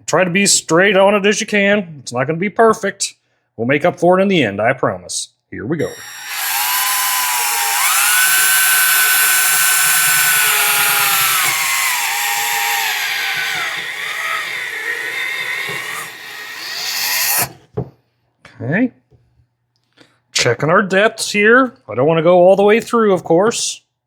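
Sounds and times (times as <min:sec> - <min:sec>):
power drill motor whine: 0:05.8 - 0:17.6.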